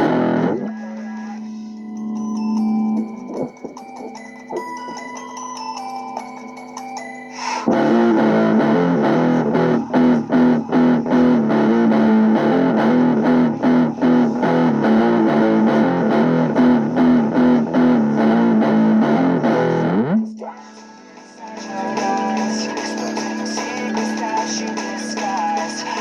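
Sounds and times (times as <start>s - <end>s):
guitar rising slide: 0.0s - 0.6s, 7.7s - 20.2s
distorted electric guitar music: 0.0s - 5.6s, 7.7s - 20.3s, 21.5s - 26.0s.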